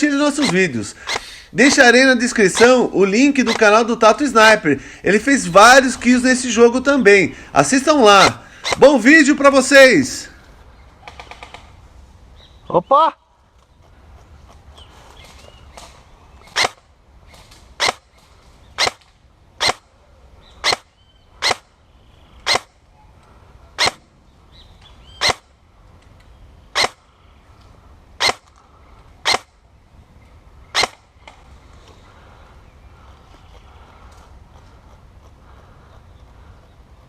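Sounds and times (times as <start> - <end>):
airsoft gun shots: 8.2 - 9.0, 16.5 - 16.8, 17.8 - 18.1, 18.8 - 19.0, 20.6 - 21.7, 22.5 - 22.7, 23.8 - 24.1, 25.2 - 25.5, 26.8 - 27.0, 28.2 - 28.5, 29.2 - 29.5, 30.8 - 31.0.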